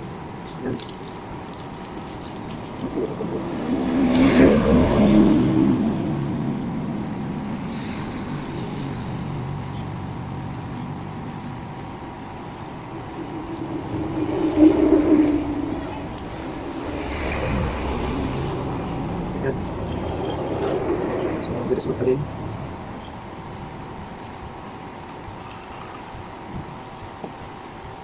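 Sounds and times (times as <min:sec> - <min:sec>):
motor vehicle passing by: 0:02.3 - 0:23.5.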